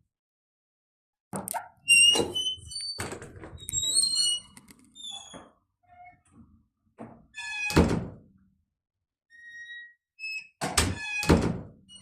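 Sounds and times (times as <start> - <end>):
door squeaking: 1.5 - 6.4, 7.0 - 8.1, 9.3 - 12.0.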